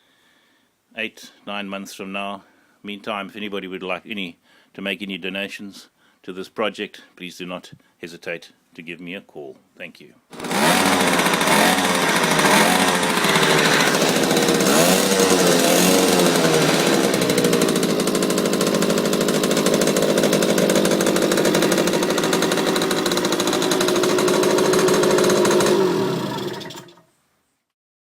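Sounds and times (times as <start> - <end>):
moped engine idling: 10.4 - 26.8.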